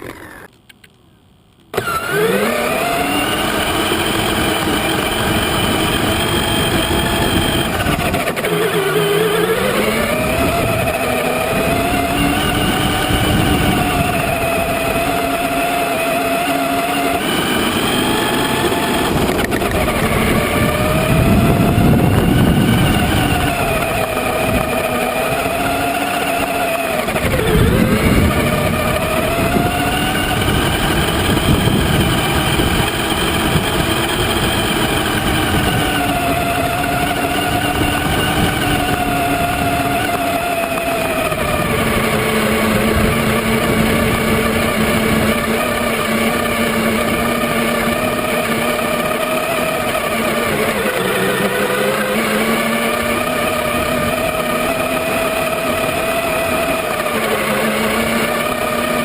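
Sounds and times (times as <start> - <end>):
electric motor whining: 0.0 - 59.0
tyres rumbling on rough ground: 1.7 - 59.0.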